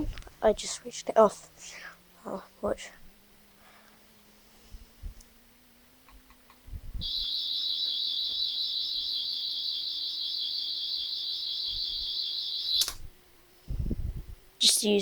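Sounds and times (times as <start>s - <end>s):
high-pitched warbling buzz: 4.1s - 14.8s.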